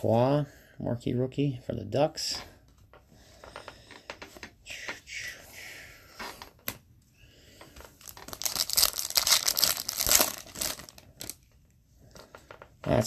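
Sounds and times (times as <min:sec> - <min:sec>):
wrapper crinkling: 0:08.0 - 0:11.4.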